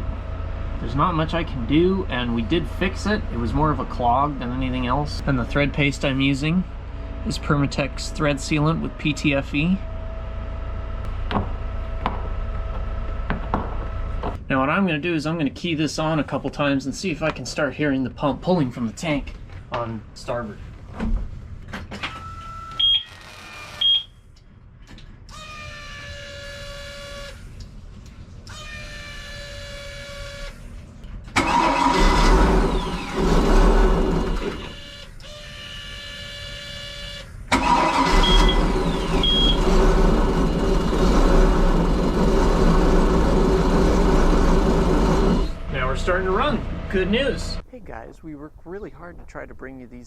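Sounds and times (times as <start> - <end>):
electric fuel pump whine: 25.3 - 27.8, 28.4 - 47.6
boat engine running: 37.6 - 50.0.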